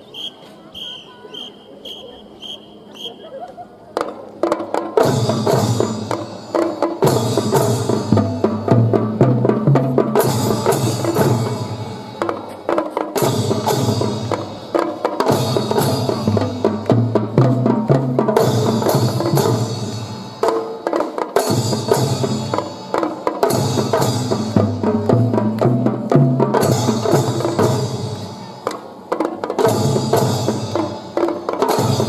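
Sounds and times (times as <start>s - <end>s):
drum and fife band playing: 3.9s - 32.0s.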